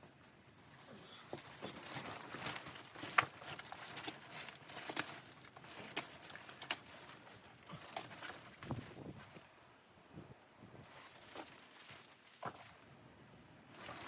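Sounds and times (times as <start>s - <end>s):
light knocks and crunches: 0.0s - 9.6s.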